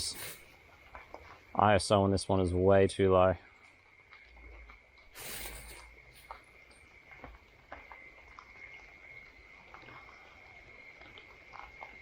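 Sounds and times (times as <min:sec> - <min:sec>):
insect high-pitched drone: 0:00.0 - 0:12.0
faint clicks and ticks: 0:02.9 - 0:05.2, 0:05.8 - 0:12.0.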